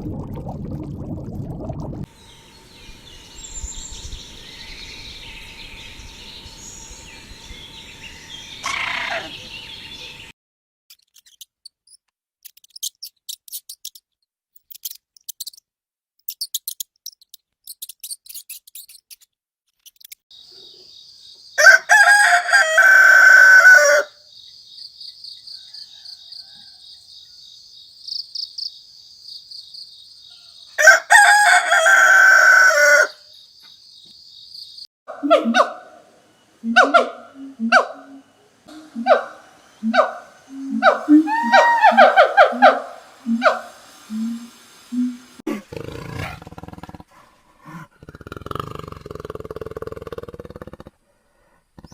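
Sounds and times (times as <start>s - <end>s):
steady high buzz: 2.1s - 10.3s
rooster crowing: 8.6s - 9.5s, 21.6s - 24.2s, 25.5s - 27.1s, 30.8s - 33.2s, 38.8s - 43.8s.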